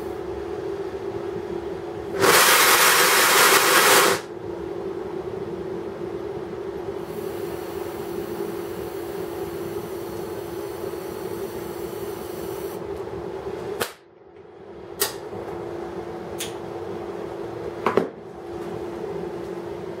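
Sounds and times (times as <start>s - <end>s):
welding torch hissing and humming: 2.1s - 4.3s, 7.0s - 12.9s.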